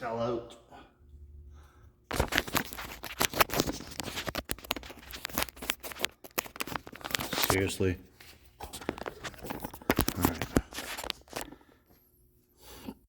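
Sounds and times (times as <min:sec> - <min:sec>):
rustling scraping and clicking: 0:02.1 - 0:11.7.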